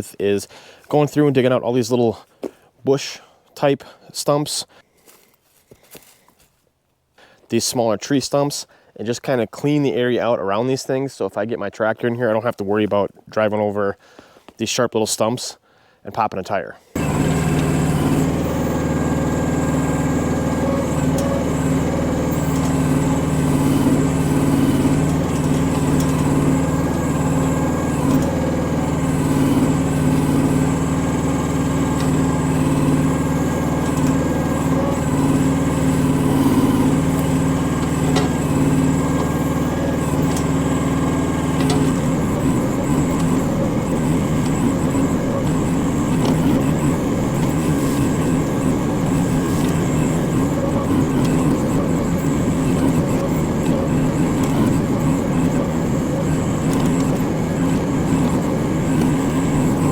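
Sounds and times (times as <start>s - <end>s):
excavator engine running: 17.0s - 59.9s
higher engine whine: 17.0s - 59.9s.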